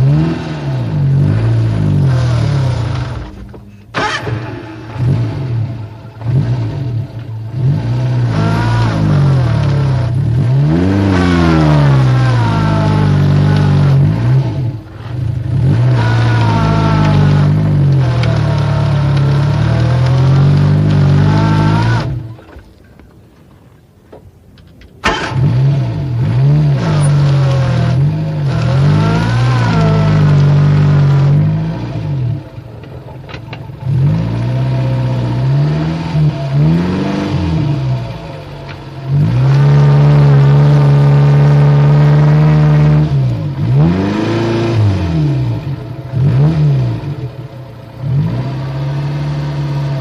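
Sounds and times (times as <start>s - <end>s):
car engine revving unevenly: 0.0s - 22.6s, 25.0s - 50.0s.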